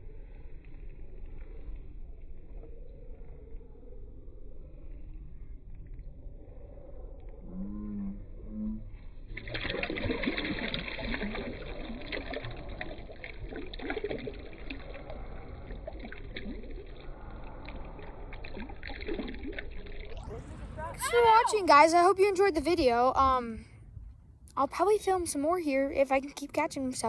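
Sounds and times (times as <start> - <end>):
low steady rumble: 0.0 - 27.0
water splashing and trickling: 9.2 - 23.6.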